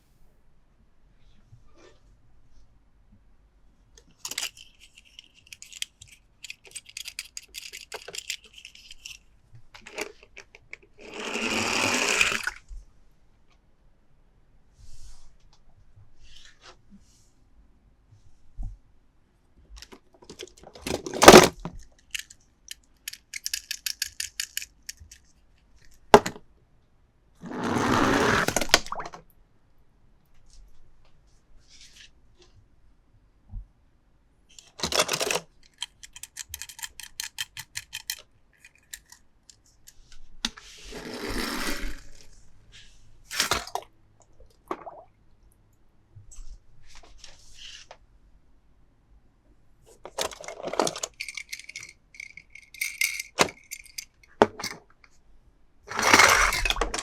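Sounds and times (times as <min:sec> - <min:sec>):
toy cars knocking and clicking: 0:04.0 - 0:09.2, 0:09.8 - 0:12.6, 0:19.8 - 0:26.4, 0:34.5 - 0:40.6, 0:50.0 - 0:54.8, 0:55.9 - 0:57.0.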